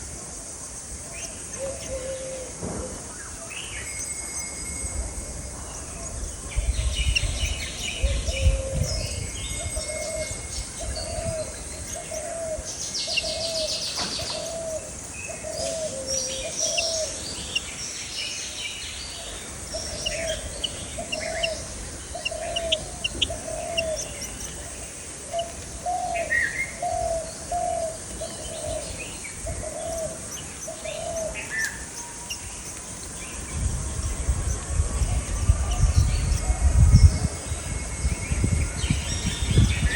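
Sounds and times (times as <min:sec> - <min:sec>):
small birds chirping: 0:03.2 - 0:39.9
bird hooting low notes: 0:04.4 - 0:17.7, 0:19.1 - 0:32.5.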